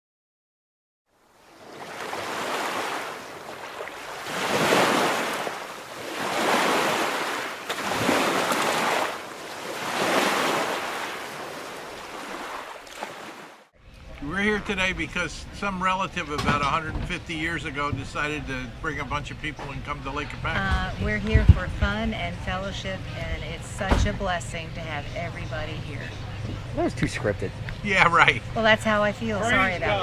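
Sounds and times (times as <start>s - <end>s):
waves washing in: 1.2s - 13.7s.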